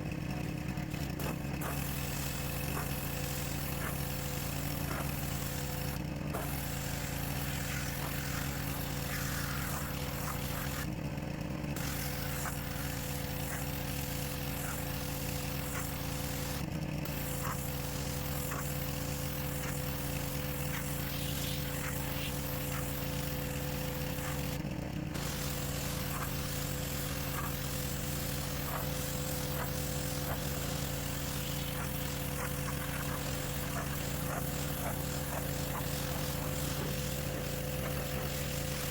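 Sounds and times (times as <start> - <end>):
pressure washer engine hum: 0.0 - 38.9
water jet hissing: 1.6 - 10.9, 11.8 - 24.6, 25.2 - 38.9.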